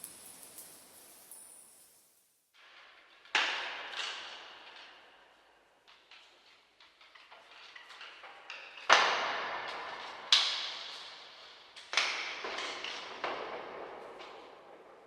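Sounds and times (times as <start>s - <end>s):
small metallic clicks and rattles: 0.0s - 1.9s.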